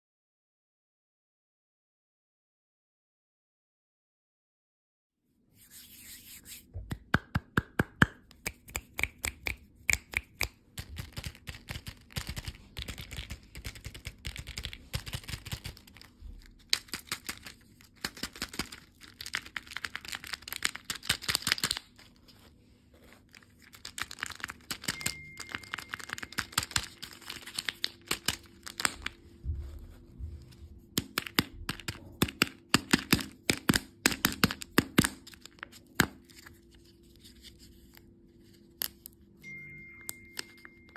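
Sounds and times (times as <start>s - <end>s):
candy wrappers crinkling: 10.8s - 22.4s, 23.0s - 29.3s, 31.0s - 37.9s.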